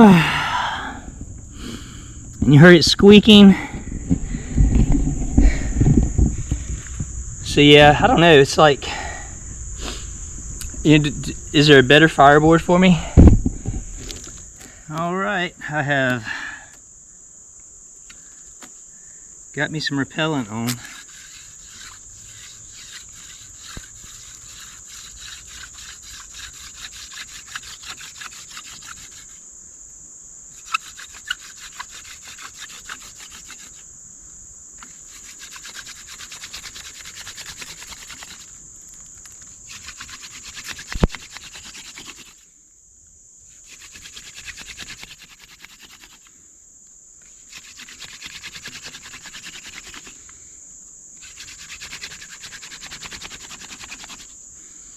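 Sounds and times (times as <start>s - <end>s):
high insect buzz: 0.0s - 54.9s
wooden spindle rubbing on board: 20.7s - 29.4s, 30.6s - 33.8s, 34.8s - 38.6s, 39.7s - 42.4s, 43.6s - 46.3s, 47.5s - 50.1s, 51.2s - 54.4s.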